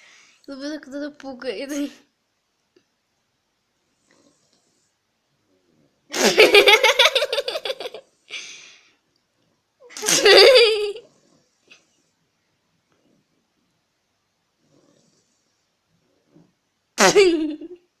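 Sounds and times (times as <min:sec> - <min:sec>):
woman laughing hard: 0:06.1 - 0:08.0.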